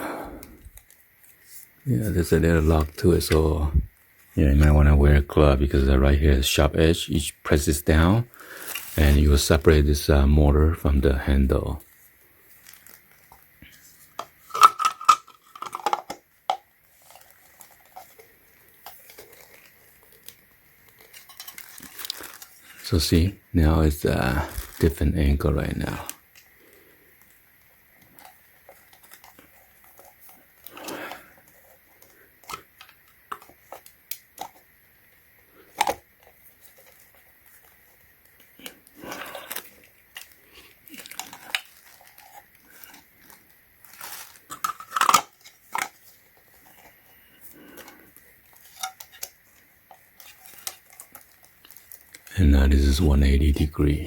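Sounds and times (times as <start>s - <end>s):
plastic pump parts clicking and knocking: 14.1s - 18.2s.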